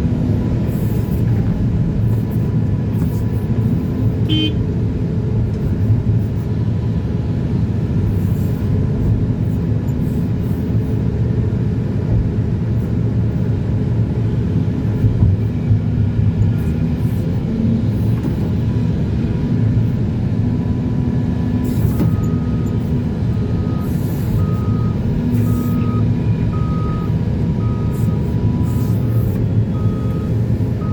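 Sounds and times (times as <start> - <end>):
heavy diesel machinery running: 0.0 - 30.9
reversing alarm beeping: 21.7 - 30.9.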